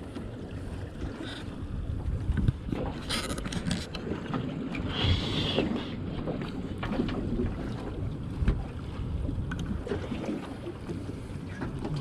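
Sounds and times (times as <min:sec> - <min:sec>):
small boat engine: 0:00.0 - 0:12.0
wind buffeting microphone: 0:00.9 - 0:03.9.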